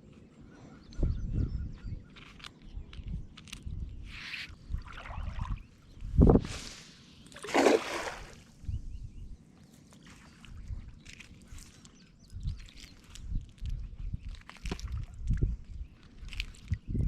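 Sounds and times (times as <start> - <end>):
water splashing at kayak: 4.7 - 5.7, 7.3 - 8.6.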